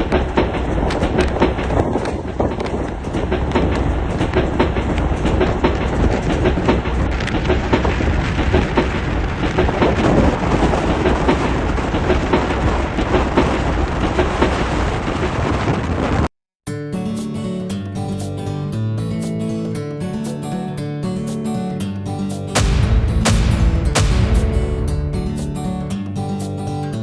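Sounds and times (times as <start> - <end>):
wheels clattering over track joints: 0.0 - 14.5
train rumbling on rails: 0.0 - 15.4.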